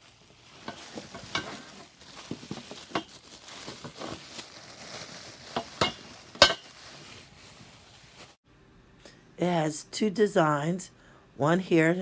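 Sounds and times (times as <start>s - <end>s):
rustling: 0.0s - 8.4s.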